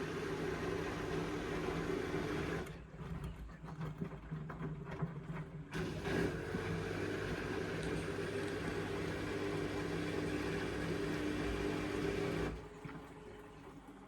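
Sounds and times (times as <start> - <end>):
washing machine motor hum: 0.0 - 14.0.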